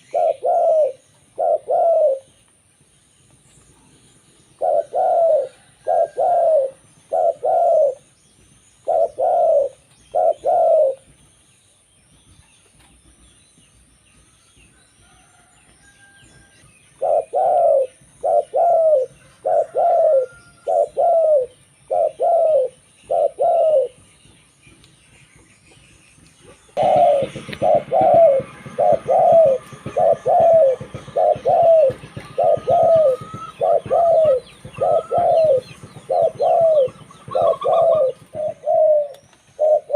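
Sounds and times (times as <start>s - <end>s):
dove cooing: 0.0s - 2.4s, 4.6s - 8.1s, 8.8s - 11.1s, 17.0s - 24.0s, 26.7s - 39.9s
small birds chirping: 0.0s - 39.9s.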